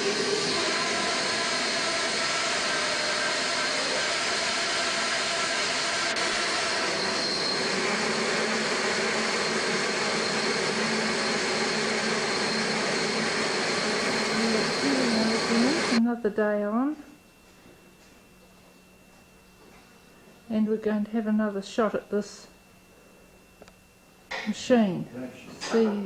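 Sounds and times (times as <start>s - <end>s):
bandsaw running with whine: 0.0s - 16.0s.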